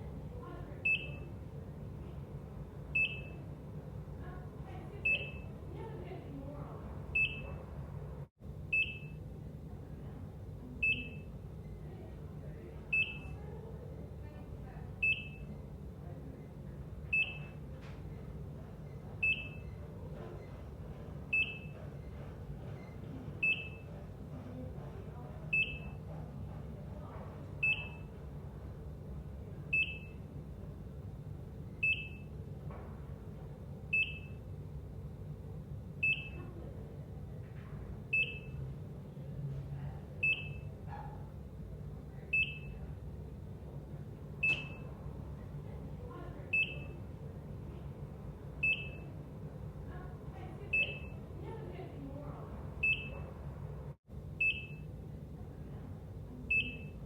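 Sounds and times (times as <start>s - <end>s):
heart monitor beeping: 0.8s - 1.4s, 3.0s - 3.5s, 5.0s - 5.6s, 7.1s - 7.6s, 8.7s - 9.2s, 10.8s - 11.8s, 12.9s - 13.4s, 15.0s - 15.8s, 17.0s - 26.6s, 27.2s - 28.3s, 29.7s - 30.4s, 31.7s - 32.4s, 33.9s - 34.5s, 36.0s - 36.4s, 38.1s - 38.6s, 40.2s - 41.2s, 42.3s - 43.0s, 44.4s - 44.9s, 46.5s - 47.0s, 48.6s - 49.2s, 50.7s - 51.3s, 52.8s - 53.3s, 54.4s - 54.9s, 56.4s - 57.0s.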